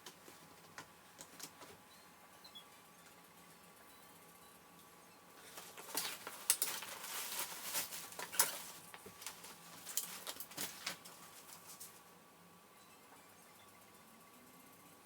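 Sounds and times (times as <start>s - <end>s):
packaging rustling and crinkling: 5.4s - 12.0s.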